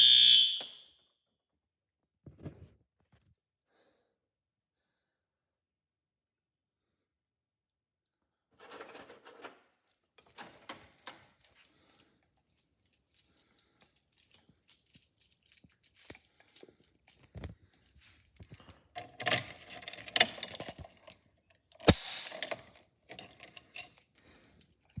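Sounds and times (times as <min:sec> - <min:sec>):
objects clicking and rattling: 0:08.6 - 0:25.0.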